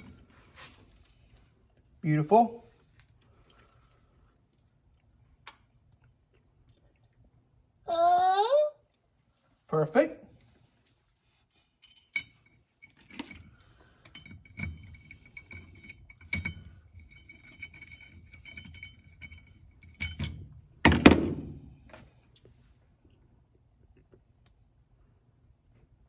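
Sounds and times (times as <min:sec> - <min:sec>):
metal tools clinking: 0:11.7 - 0:20.6.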